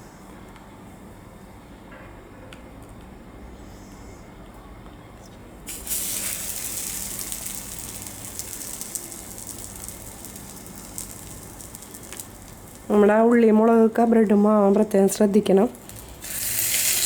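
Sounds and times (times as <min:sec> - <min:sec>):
bread sizzling in a frying pan: 0:05.7 - 0:13.3, 0:15.7 - 0:17.0.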